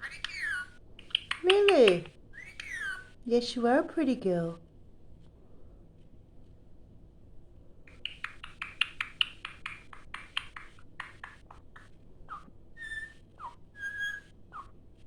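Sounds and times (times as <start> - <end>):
parrot whistles: 0.0 - 0.7, 2.4 - 3.1, 11.5 - 14.7
parrot clicking chatter: 0.0 - 3.0, 7.9 - 14.7.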